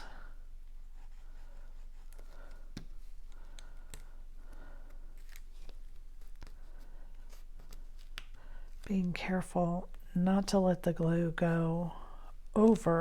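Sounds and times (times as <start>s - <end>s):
cardstock being folded: 2.1s - 8.9s.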